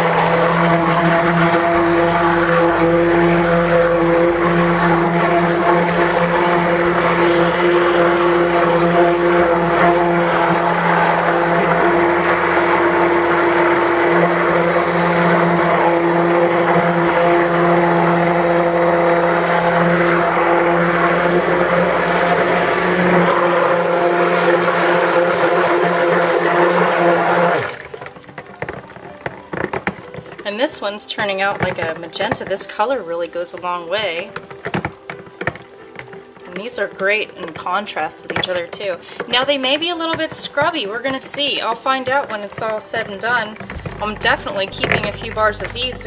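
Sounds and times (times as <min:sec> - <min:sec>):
stick blender motor running: 0:43.7 - 0:46.0.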